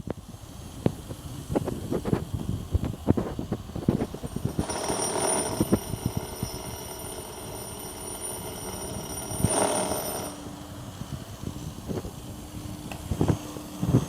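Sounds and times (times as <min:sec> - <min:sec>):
steady high whine: 0:00.0 - 0:14.0
router cutting marble: 0:03.8 - 0:10.8.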